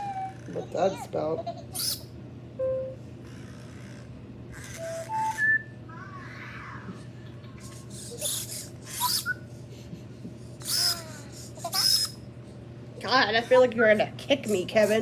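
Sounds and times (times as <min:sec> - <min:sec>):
steady low hum: 0:00.0 - 0:15.0
short electronic beeps: 0:02.6 - 0:03.0
warbling electronic chirps: 0:04.8 - 0:05.8.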